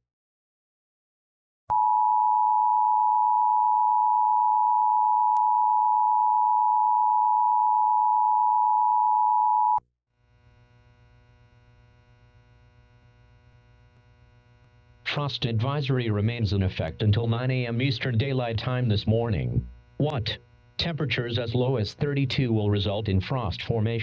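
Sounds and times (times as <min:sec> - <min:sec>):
faint low hum: 0:10.2 - 0:24.0.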